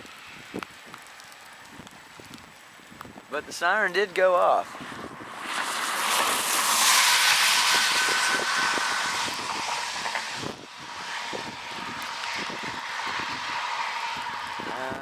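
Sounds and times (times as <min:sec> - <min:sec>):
passing vehicle hiss: 0:03.6 - 0:15.0.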